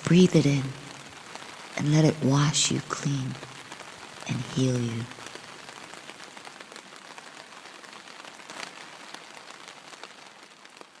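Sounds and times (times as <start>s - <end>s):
raindrops ticking: 0.0s - 6.4s
steady rain falling: 0.0s - 11.0s.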